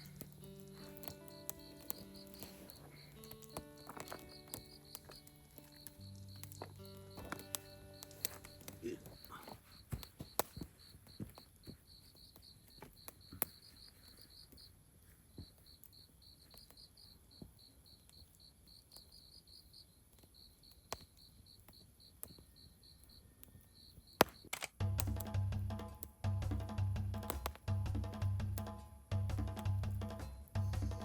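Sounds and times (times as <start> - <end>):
crickets chirping: 0.0 - 24.6
campfire popping: 0.0 - 31.0.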